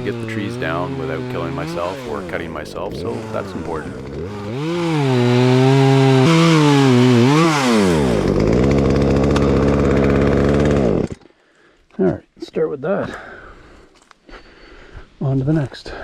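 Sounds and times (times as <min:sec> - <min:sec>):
chainsaw running: 0:00.0 - 0:11.4.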